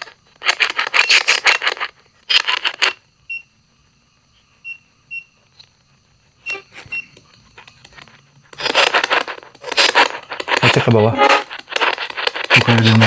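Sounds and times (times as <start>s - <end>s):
crackle bursts: 0.0s - 3.1s, 6.4s - 13.0s
faint electronic whine: 0.0s - 13.0s
short high electronic beeps: 10.7s - 11.6s.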